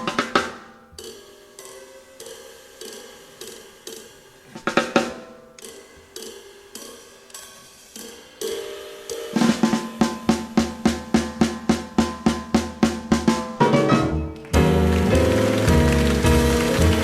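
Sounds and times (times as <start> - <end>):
jazz drum kit playing: 0.0 - 1.2, 4.4 - 5.6, 8.0 - 17.0.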